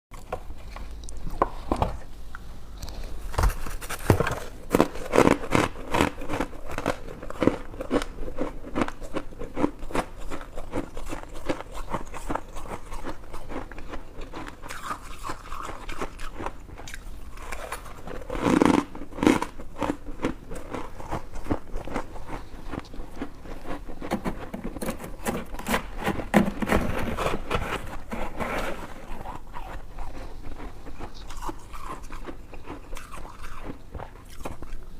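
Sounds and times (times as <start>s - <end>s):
person crunching ice: 3.9s - 34.7s.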